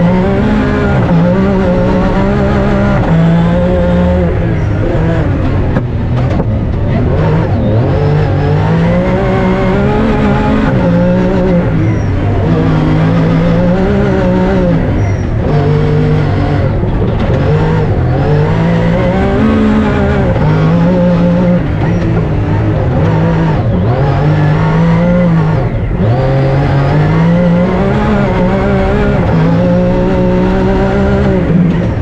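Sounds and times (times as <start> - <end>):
rally car engine revving: 0.0 - 32.0.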